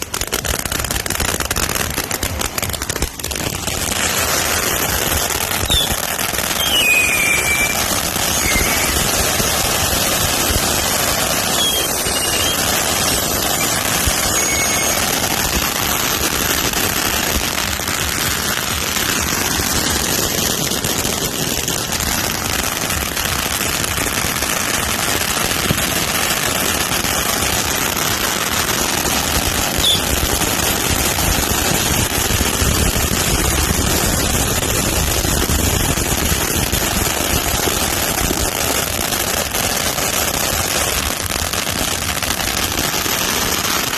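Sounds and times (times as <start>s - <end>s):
firework whistles: 0.0s - 43.9s
fireworks crackling: 0.0s - 43.9s.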